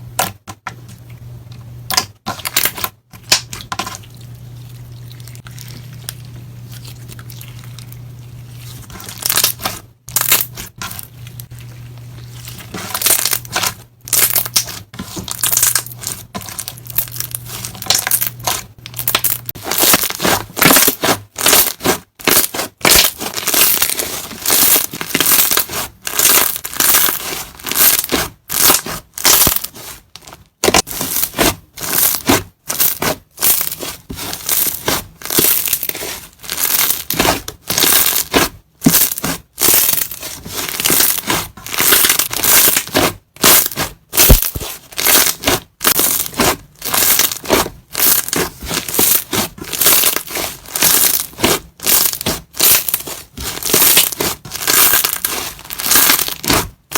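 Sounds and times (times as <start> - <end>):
steady low hum: 0.0 - 21.4
slime squelching and popping: 2.0 - 56.9.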